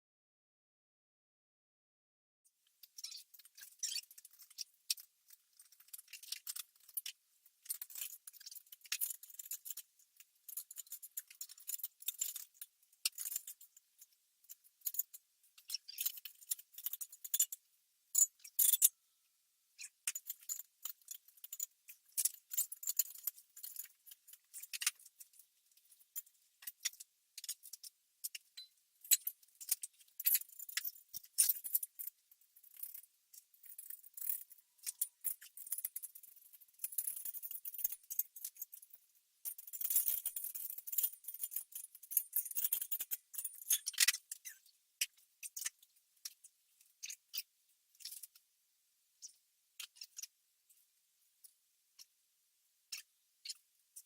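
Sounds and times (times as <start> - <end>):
metal parts clicking and clinking: 2.9 - 9.9, 10.5 - 13.8, 14.4 - 17.6, 18.2 - 18.9, 19.8 - 46.4.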